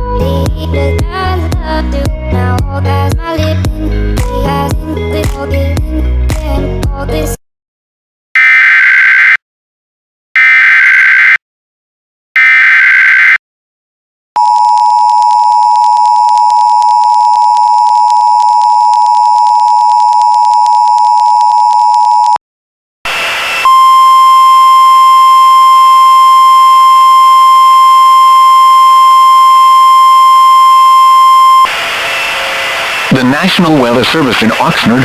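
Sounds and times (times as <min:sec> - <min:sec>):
steady alarm tone: 0:23.1 - 0:34.7
two-tone attention beep: 0:23.6 - 0:31.7.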